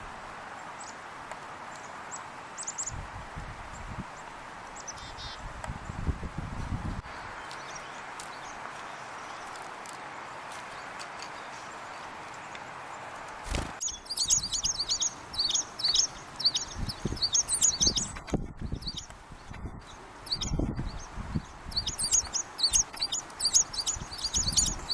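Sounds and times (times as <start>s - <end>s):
songbirds chirping: 0.0s - 24.9s.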